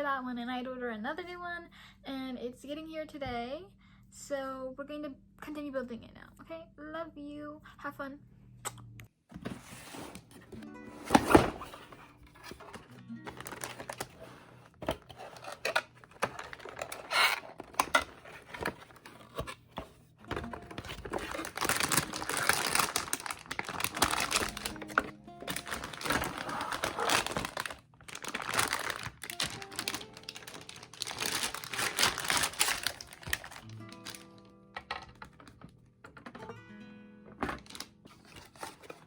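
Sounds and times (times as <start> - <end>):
packaging crinkling and rustling: 9.4 - 36.3, 37.4 - 39.0
soft background music: 9.5 - 18.8, 20.1 - 39.0.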